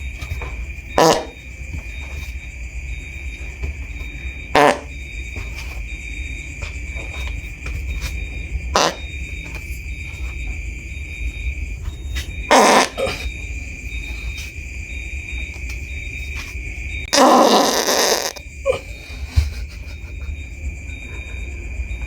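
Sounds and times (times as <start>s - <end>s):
farts: 1.0s - 1.4s, 4.5s - 4.9s, 8.7s - 9.1s, 12.5s - 13.3s, 17.1s - 18.8s.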